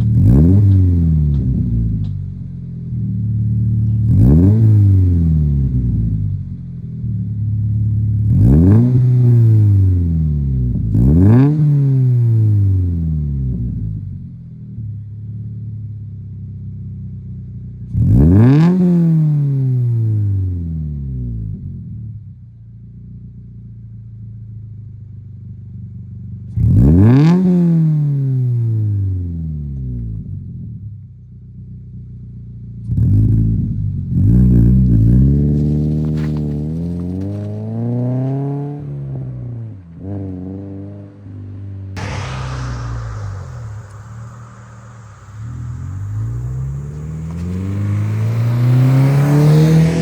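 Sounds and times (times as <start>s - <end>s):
car engine idling and revving: 0.0s - 22.0s, 31.6s - 50.0s
car engine revving: 42.0s - 50.0s.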